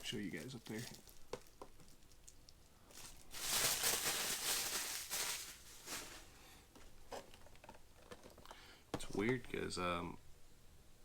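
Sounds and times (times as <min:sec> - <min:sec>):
cardboard packaging rustling: 0:00.0 - 0:01.9, 0:02.9 - 0:09.4.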